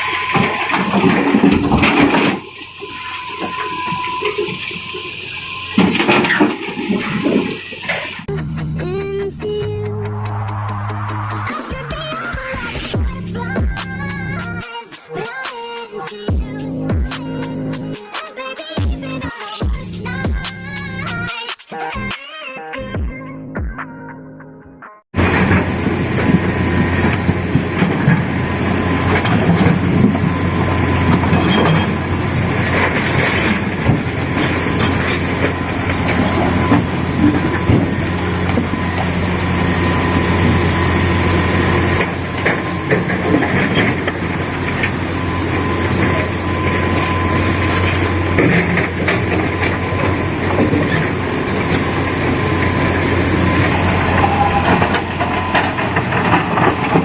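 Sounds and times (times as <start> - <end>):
excavator engine running: 0.0 - 21.3, 25.2 - 57.0
knocks and clatter: 0.3 - 2.8, 5.7 - 8.8, 31.0 - 39.2, 42.0 - 51.9, 53.6 - 57.0.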